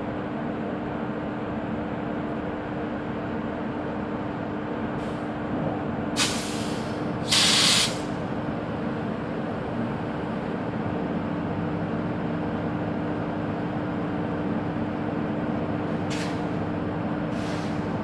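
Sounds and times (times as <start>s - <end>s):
compressed air hiss: 6.2s - 8.1s, 17.4s - 17.8s.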